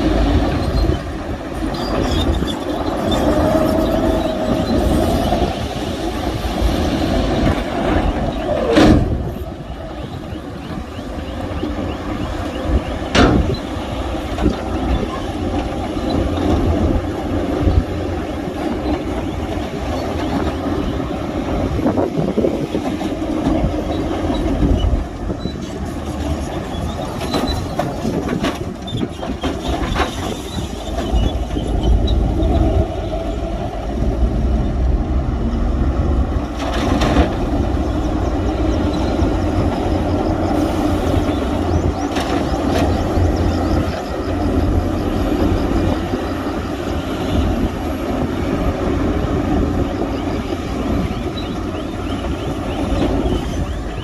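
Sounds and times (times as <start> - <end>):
heavy diesel machinery rumbling: 0.0 - 54.0
metal knocks and clanks: 13.1 - 13.7.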